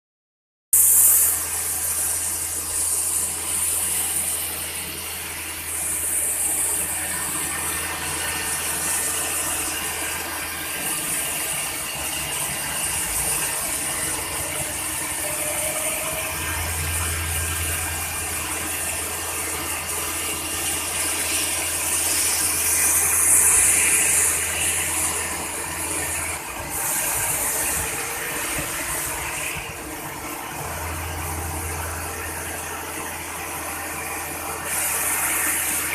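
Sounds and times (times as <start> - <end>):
machine mechanical hum: 0.8 - 35.9
low drone: 11.6 - 35.9.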